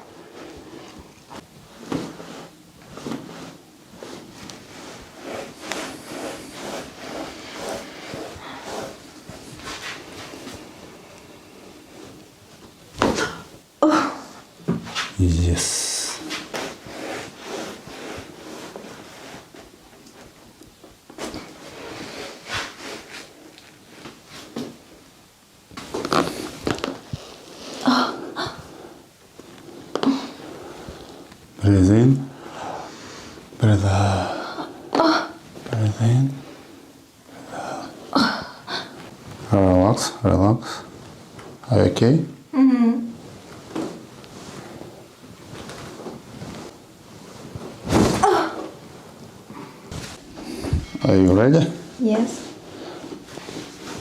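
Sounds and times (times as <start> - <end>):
hands rubbing on clothing: 0.3 - 10.7
knocks and creaks of body handling: 12.0 - 13.6, 43.2 - 51.2.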